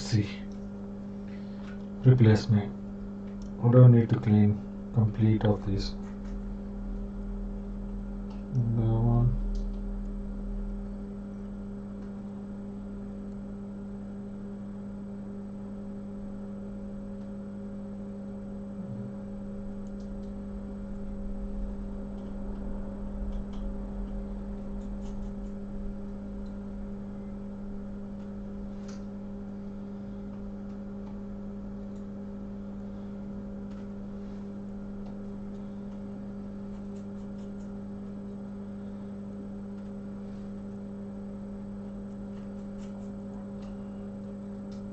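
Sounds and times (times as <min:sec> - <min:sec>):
electrical hum: 0:00.0 - 0:44.9
small tool scraping: 0:42.4 - 0:43.2.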